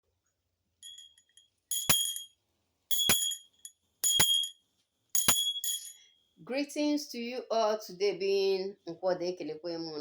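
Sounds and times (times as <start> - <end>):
small metal bell struck: 0.8 - 2.3, 2.9 - 4.6, 5.2 - 6.1
light bell tinkles: 0.8 - 4.6, 5.2 - 6.2.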